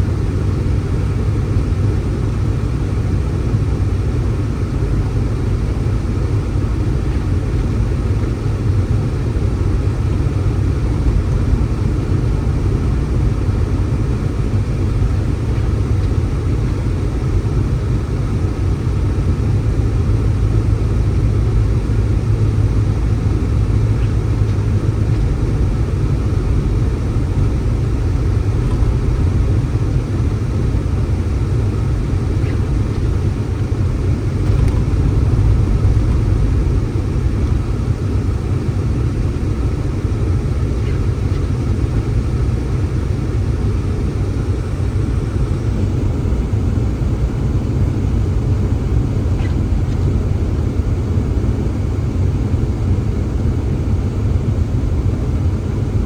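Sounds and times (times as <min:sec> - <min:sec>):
wind buffeting microphone: 0:21.6 - 0:39.9.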